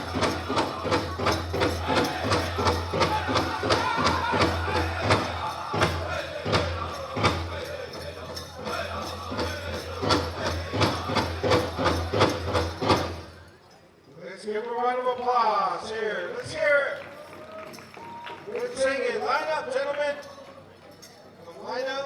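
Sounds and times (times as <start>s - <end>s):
big drum beating: 0.0s - 13.4s
drum group singing: 0.0s - 13.4s.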